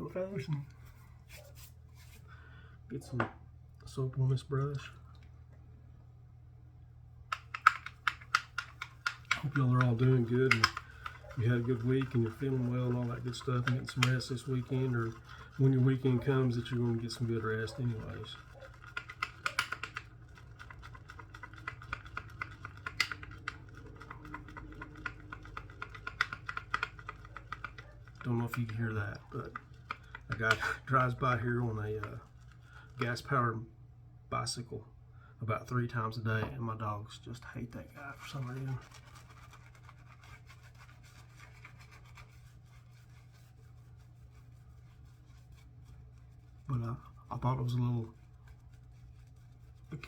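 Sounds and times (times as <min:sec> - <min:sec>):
shaving brush scratching soap: 0:07.3 - 0:33.5, 0:37.8 - 0:50.0.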